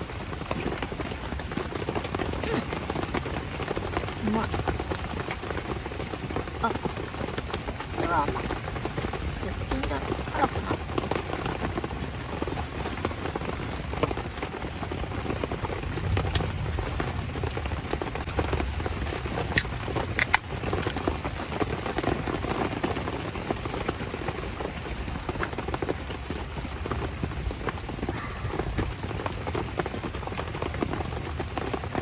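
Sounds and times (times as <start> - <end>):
rain pattering: 0.0 - 32.0
sharp clicks: 19.6 - 20.5.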